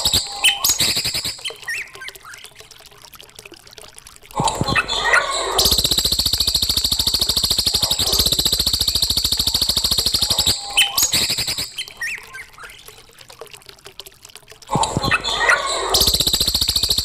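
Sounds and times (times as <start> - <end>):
songbird trilling: 7.6 - 12.2.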